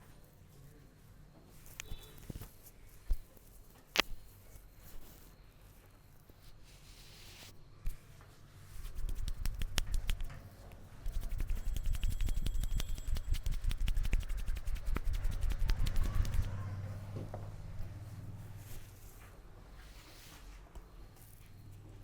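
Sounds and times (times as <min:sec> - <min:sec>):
hands tapping on head: 0:08.8 - 0:16.6.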